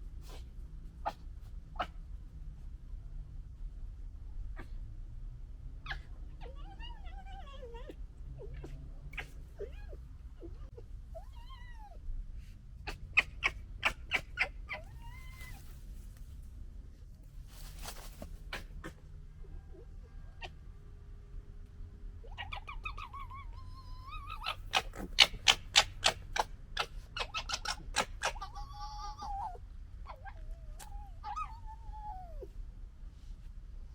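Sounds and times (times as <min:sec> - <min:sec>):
fox whines: 0:05.8 - 0:12.0, 0:12.8 - 0:15.7, 0:22.2 - 0:32.6
foxes gekkering clicks: 0:24.4 - 0:28.4.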